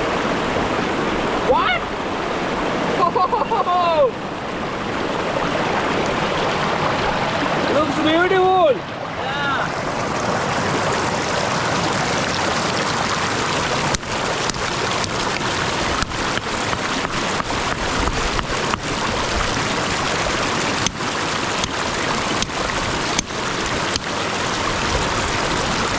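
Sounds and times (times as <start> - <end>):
stream water rushing: 0.0 - 25.9.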